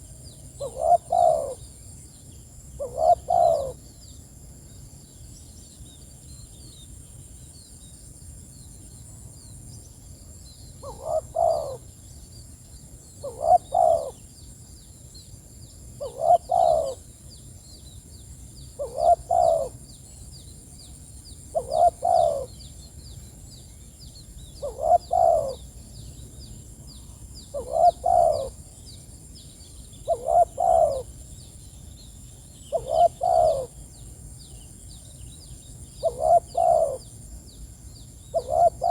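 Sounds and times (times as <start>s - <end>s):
dove cooing: 0.6s - 1.6s, 2.8s - 3.8s, 10.8s - 11.8s, 13.2s - 14.2s, 16.0s - 17.0s, 18.8s - 19.8s, 21.5s - 22.6s, 24.6s - 25.7s, 27.5s - 28.6s, 30.0s - 31.1s, 32.7s - 33.8s, 36.0s - 37.1s, 38.3s - 38.9s.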